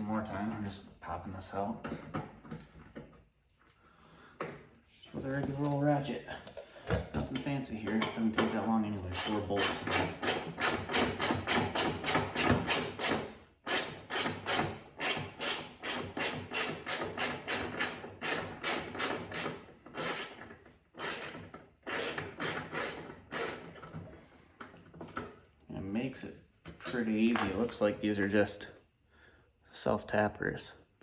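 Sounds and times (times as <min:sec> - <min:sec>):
hand ratchet clicking: 0:09.2 - 0:23.8.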